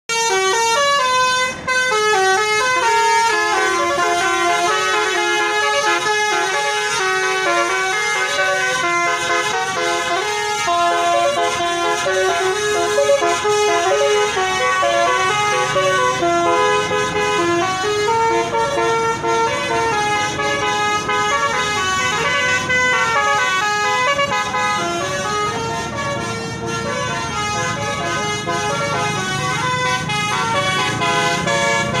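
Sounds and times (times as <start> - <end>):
multi-tone musical bus horn: 0.1 - 32.0.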